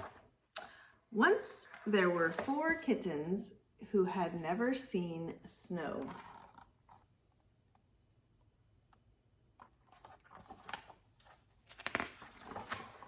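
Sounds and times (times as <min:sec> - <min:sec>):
paper page rustling and turning: 0:06.0 - 0:07.0, 0:09.6 - 0:13.0.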